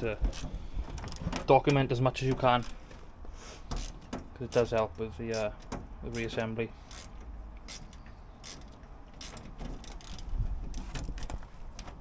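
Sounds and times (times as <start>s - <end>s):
clicks and knocks on metal: 3.7s - 12.0s.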